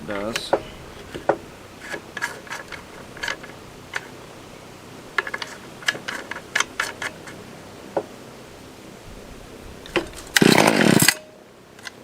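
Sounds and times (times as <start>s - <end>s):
chainsaw being handled clicks: 5.2s - 7.4s, 9.9s - 12.0s.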